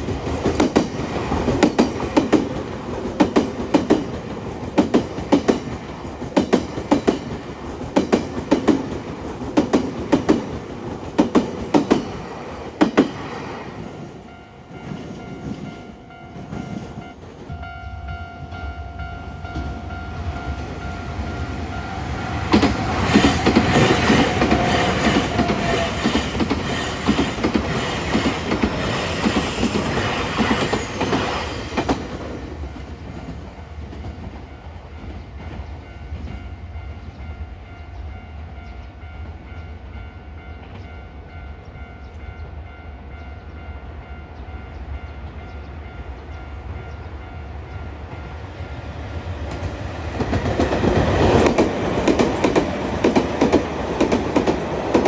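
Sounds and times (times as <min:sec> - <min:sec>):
crossing warning bell: 0:14.2 - 0:32.0, 0:33.2 - 0:49.3
train wheels clattering over joints: 0:22.4 - 0:32.4.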